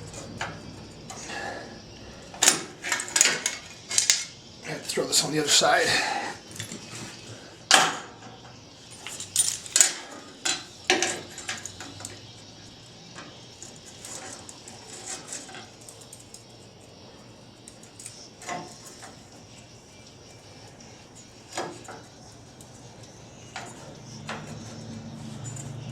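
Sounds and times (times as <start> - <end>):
metal clanks of steel parts: 2.3 - 4.4, 8.9 - 12.2, 23.5 - 25.9.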